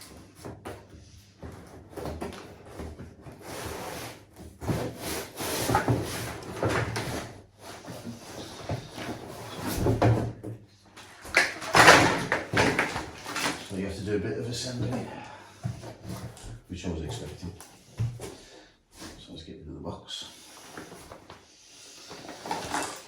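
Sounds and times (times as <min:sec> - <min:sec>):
cardboard scraping and rubbing: 0:00.0 - 0:10.2.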